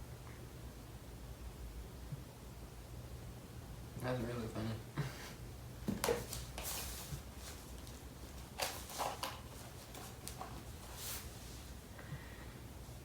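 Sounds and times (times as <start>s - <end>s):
low background hum: 0.0s - 13.0s
rustles and clicks of handling cables: 5.8s - 11.8s.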